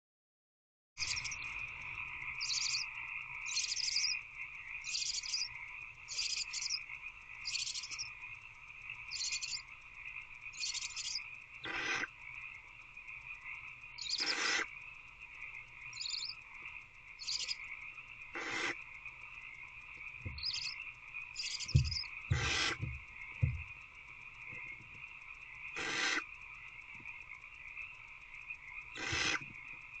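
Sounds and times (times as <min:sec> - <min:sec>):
owl nestlings hissing: 0:01.0 - 0:01.4, 0:02.4 - 0:04.2, 0:04.8 - 0:08.2, 0:09.0 - 0:09.7, 0:10.5 - 0:12.2, 0:14.0 - 0:14.8, 0:15.9 - 0:16.4, 0:17.2 - 0:17.7, 0:18.3 - 0:18.8, 0:20.2 - 0:23.0, 0:25.7 - 0:26.3, 0:28.9 - 0:29.6
frogs calling: 0:01.0 - 0:30.0.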